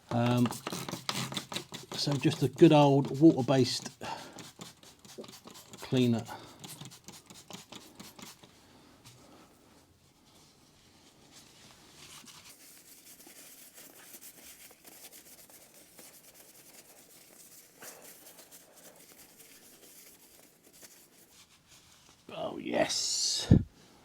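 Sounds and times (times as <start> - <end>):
scrubbing and rustling: 0.1 - 8.6, 10.0 - 22.3
scrape: 0.1 - 22.3.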